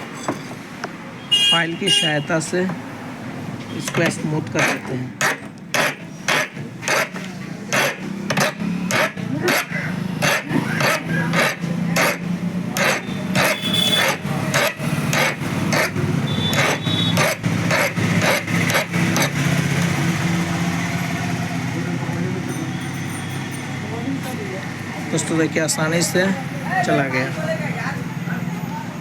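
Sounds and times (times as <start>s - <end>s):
hand file rasping on metal: 3.9s - 19.4s.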